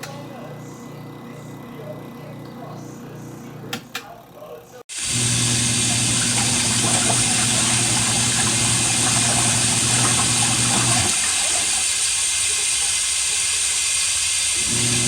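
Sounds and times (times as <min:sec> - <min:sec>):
electric motor hum: 0:00.0 - 0:11.2, 0:14.6 - 0:15.0
water rushing: 0:04.9 - 0:11.9.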